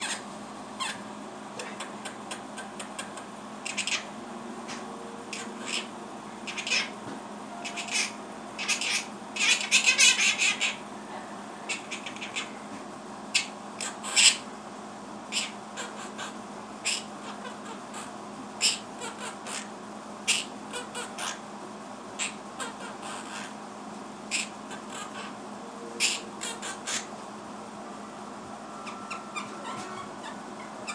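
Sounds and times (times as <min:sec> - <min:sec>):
parrot calling and chattering: 0:00.0 - 0:12.7, 0:13.3 - 0:14.5, 0:15.3 - 0:21.5, 0:22.2 - 0:27.2, 0:28.8 - 0:30.9
parrot chirps and clicks: 0:01.6 - 0:04.1.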